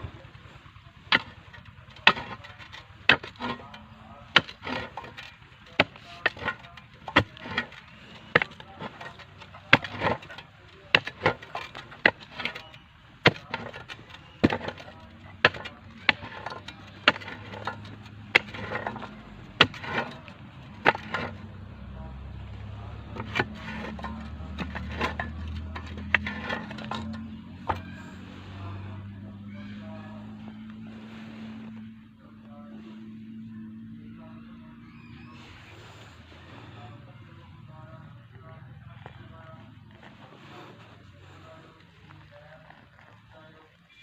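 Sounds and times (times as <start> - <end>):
digging tool striking ground: 1.0 - 21.6, 22.6 - 28.0.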